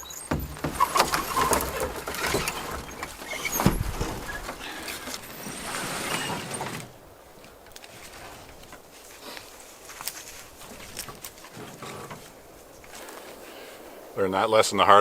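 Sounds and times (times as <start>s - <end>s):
canoe knocking and scraping: 0.0s - 9.3s, 10.2s - 13.2s.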